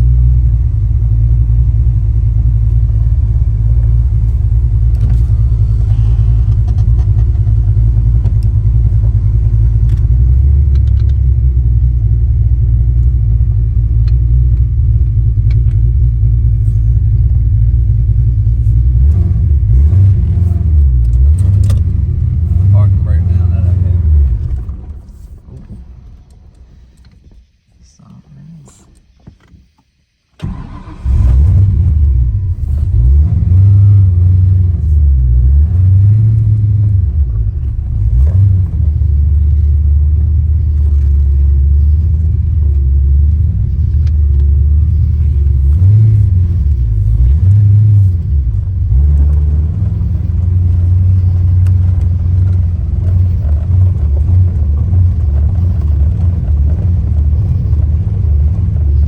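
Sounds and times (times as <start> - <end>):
car engine running loudly: 0.0 - 27.0, 30.4 - 59.0
engine cranking: 2.9 - 11.3, 18.5 - 27.3, 30.4 - 33.8, 34.8 - 59.0.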